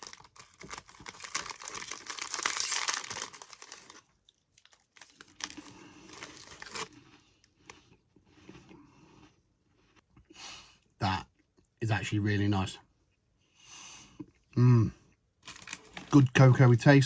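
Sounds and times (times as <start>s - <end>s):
plastic wrapper crinkling: 0.0s - 7.0s, 15.4s - 16.2s.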